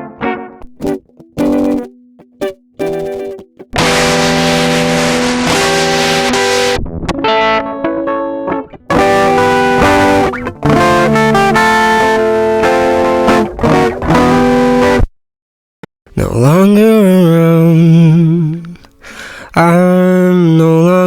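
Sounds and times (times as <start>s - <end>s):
distorted electric guitar chords: 0.0s - 15.1s.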